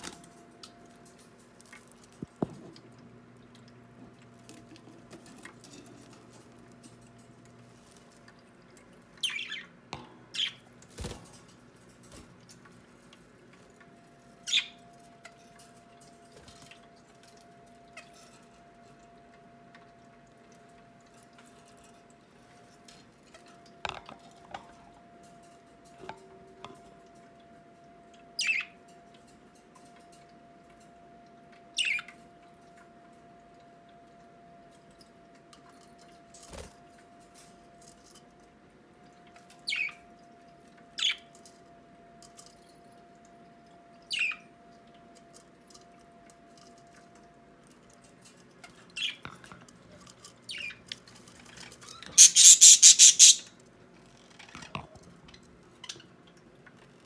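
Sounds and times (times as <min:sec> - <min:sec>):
budgerigar chirps: 0:52.2 - 0:53.5.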